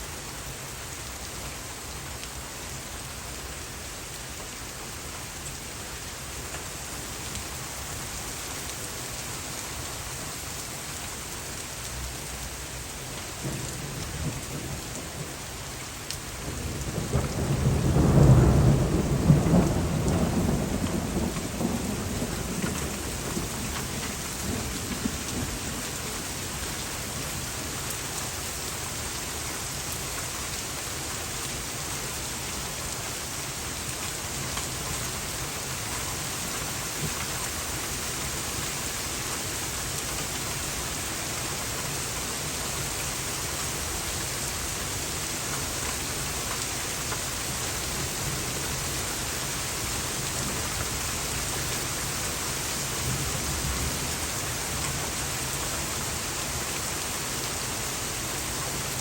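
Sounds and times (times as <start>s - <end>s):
heavy rain falling: 0.1s - 59.0s
thunder rumbling: 16.5s - 25.8s.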